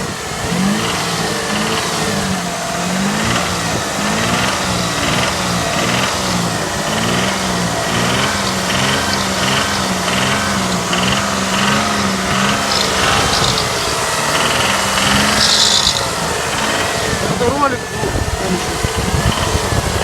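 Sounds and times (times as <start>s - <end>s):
car engine revving: 0.0s - 20.0s
engine knocking: 0.0s - 20.0s.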